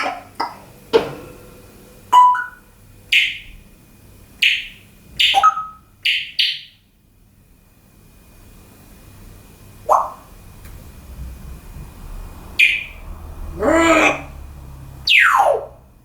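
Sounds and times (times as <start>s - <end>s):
parrot beeping calls: 2.1s - 3.6s, 4.4s - 6.8s, 9.9s - 10.3s, 12.6s - 13.0s, 13.6s - 14.4s, 15.0s - 15.8s.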